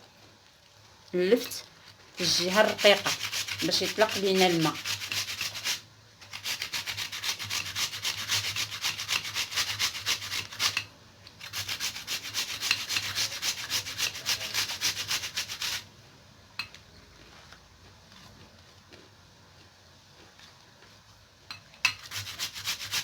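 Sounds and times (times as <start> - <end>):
turnip grated on hand grater: 2.2 - 15.8, 21.9 - 23.0.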